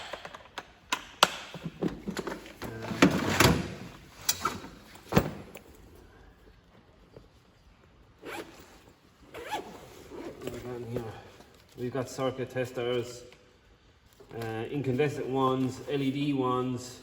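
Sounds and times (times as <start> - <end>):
tool boxes knocking and clattering: 0.0 - 5.5.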